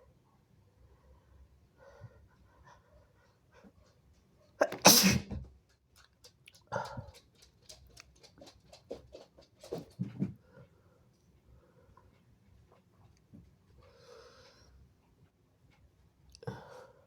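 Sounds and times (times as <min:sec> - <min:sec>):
person sneezing: 0:04.6 - 0:05.4.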